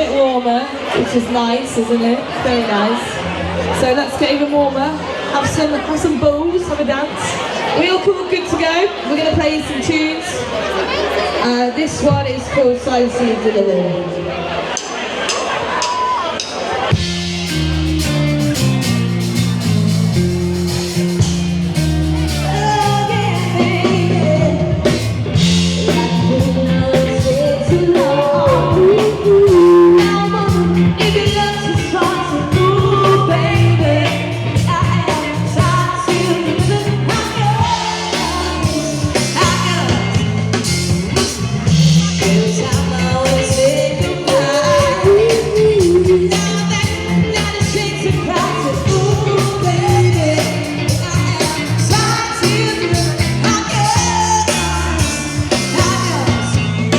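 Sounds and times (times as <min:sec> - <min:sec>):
bass guitar: 0:01.0 - 0:07.5, 0:16.7 - 0:56.9
drums keeping a steady beat: 0:14.6 - 0:56.9
electric guitar: 0:16.9 - 0:56.9
person singing: 0:22.3 - 0:56.9.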